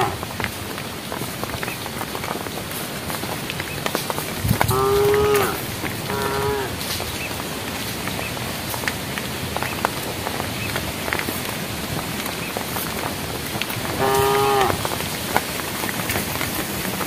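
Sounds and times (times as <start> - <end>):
cow mooing: 4.7 - 6.8, 14.0 - 14.8.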